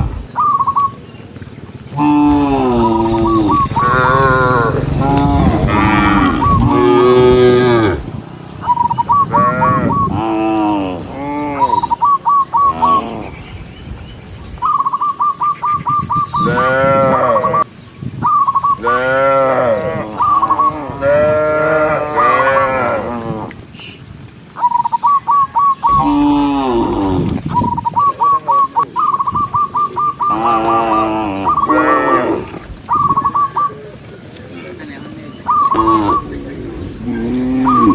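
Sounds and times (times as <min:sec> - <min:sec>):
cows mooing: 0:01.9 - 0:08.2, 0:09.3 - 0:11.9, 0:16.4 - 0:17.7, 0:18.8 - 0:23.7, 0:25.9 - 0:27.5, 0:30.2 - 0:32.7, 0:35.6 - 0:37.9.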